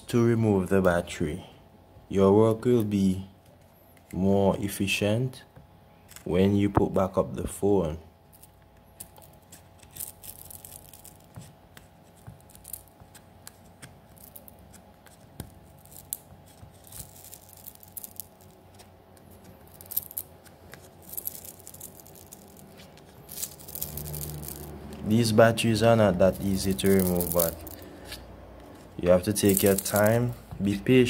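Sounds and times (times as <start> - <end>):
tools clicking and scraping: 12.1 - 25.2, 26.3 - 30.8.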